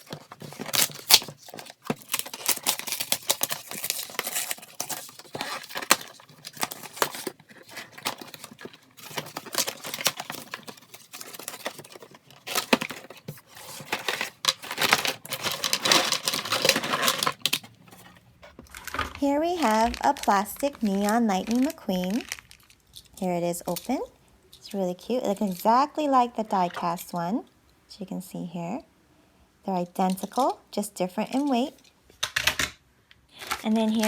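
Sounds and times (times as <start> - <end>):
cardboard and plastic crinkling: 0.0 - 23.8.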